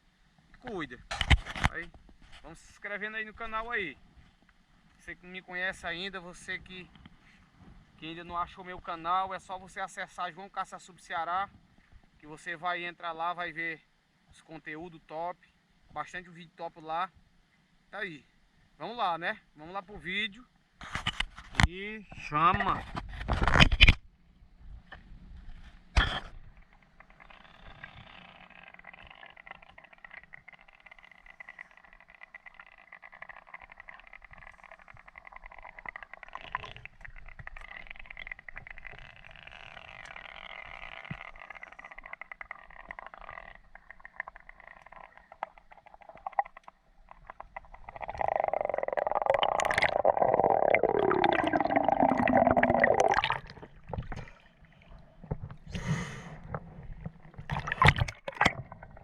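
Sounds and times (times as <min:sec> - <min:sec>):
faint underwater hiss: 0:41.2 - 0:58.0
rushing gurgling water: 0:43.8 - 0:55.4, 0:56.5 - 0:59.0.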